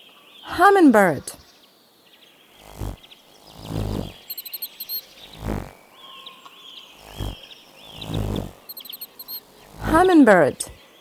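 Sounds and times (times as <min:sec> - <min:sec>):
hummingbird chips and twitters: 0:02.6 - 0:05.8, 0:06.9 - 0:10.2
very high squeaks: 0:02.6 - 0:05.8, 0:07.0 - 0:10.1.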